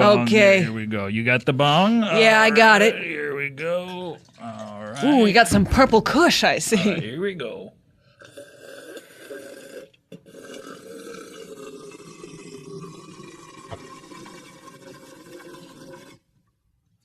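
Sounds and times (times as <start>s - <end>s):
bong bubbling: 8.0s - 16.4s.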